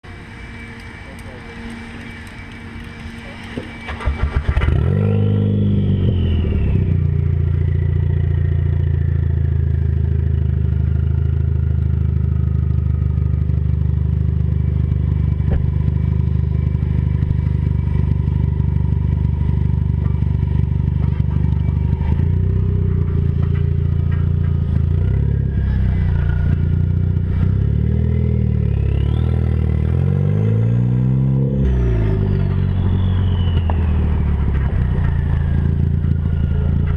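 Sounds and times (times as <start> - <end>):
car engine starting and idling: 0.1 - 36.9
turbo whistle: 0.2 - 7.8, 28.1 - 36.8.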